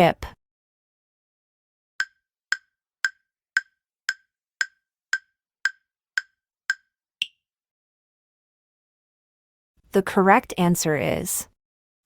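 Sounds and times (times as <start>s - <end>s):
countdown timer ticks: 2.0s - 7.4s.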